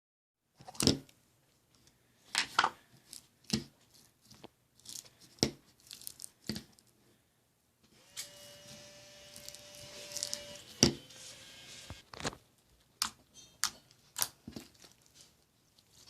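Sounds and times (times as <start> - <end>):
slime popping and crackling: 3.1 - 6.8.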